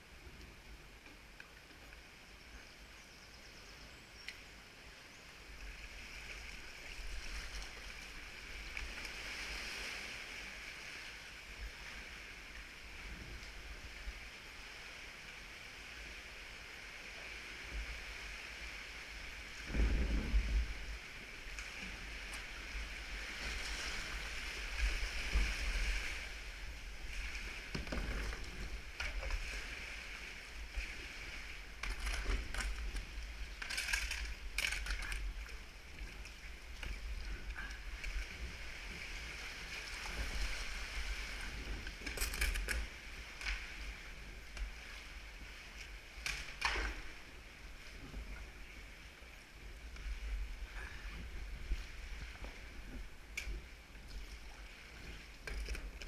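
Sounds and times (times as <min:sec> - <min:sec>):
paddle splashes: 0:04.9 - 0:56.0
water dripping off paddle blades: 0:20.8 - 0:56.0.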